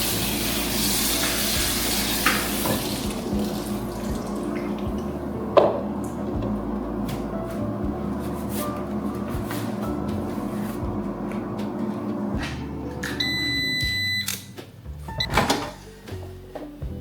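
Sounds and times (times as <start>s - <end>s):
kitchen appliance humming: 0.0s - 14.2s
long beep: 13.2s - 14.4s.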